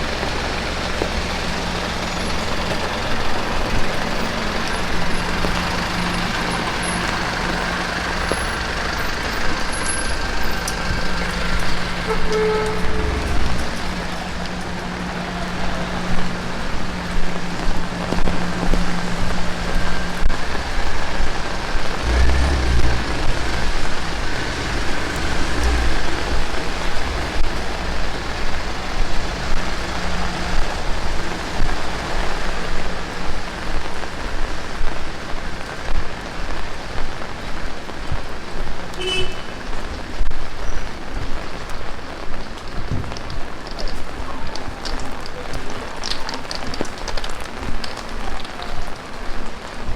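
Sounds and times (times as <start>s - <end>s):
deep rumble: 0.0s - 36.0s
vehicle motor humming: 0.0s - 40.3s
heavy rain pattering: 0.0s - 49.9s.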